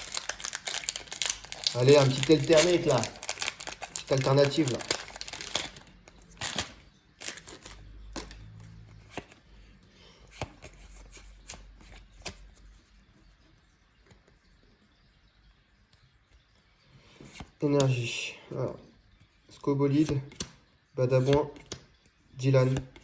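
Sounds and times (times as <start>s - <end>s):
trading cards flicking and rustling: 0.0s - 9.4s.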